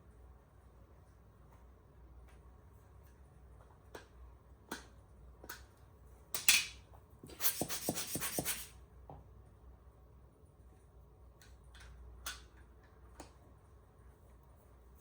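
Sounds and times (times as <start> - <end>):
rubbing and scraping: 7.3 - 8.7
sharp hissing burst: 7.4 - 8.7.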